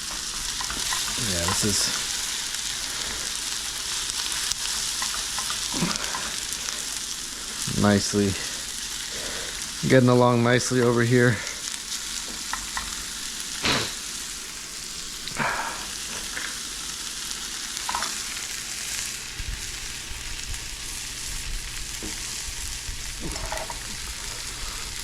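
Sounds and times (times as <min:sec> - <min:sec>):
vegetables sizzling in a pan: 0:00.0 - 0:25.0
utensil scraping a pan: 0:23.2 - 0:24.0.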